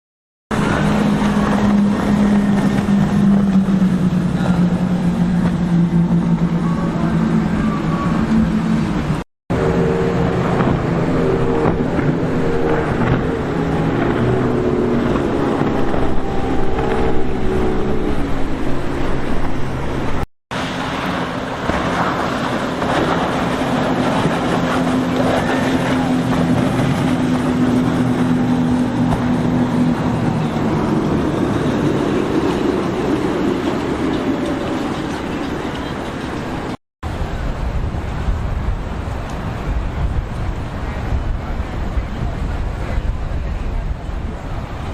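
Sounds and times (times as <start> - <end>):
motorboat engines running: 0.5 - 44.9
water noise: 0.5 - 44.9
wind: 0.5 - 44.9.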